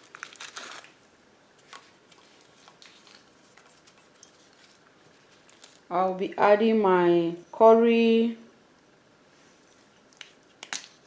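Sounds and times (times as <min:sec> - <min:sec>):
foil wrapper crinkling: 0:00.0 - 0:01.0, 0:01.6 - 0:05.9.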